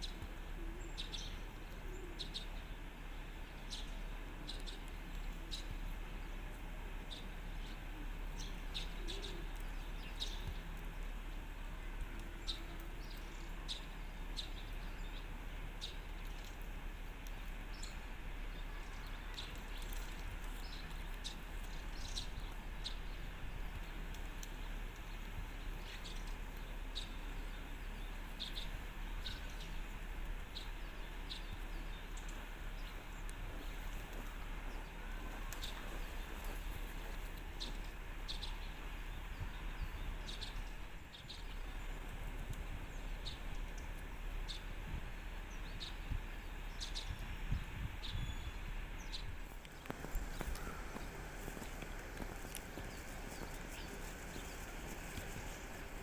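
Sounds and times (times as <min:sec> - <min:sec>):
birds chirping: 0:00.0 - 0:56.0
low hum: 0:00.0 - 0:56.0
steady background hiss: 0:00.0 - 0:56.0.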